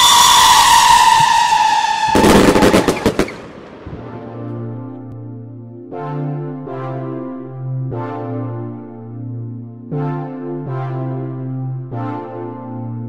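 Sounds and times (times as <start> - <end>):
firework whistle: 0.0 - 3.8
firework bangs and crackles: 1.4 - 4.4
background music: 2.1 - 13.0.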